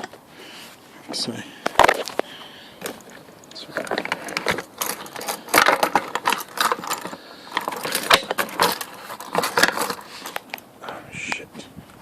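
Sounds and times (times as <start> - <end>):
metallic jangling and clicks: 2.8 - 10.6.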